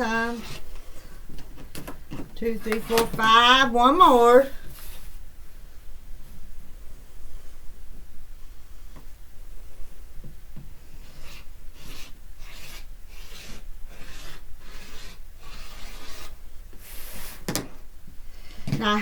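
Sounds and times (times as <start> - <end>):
rotary cutter rasping on fabric: 0.0 - 0.7, 11.0 - 16.4.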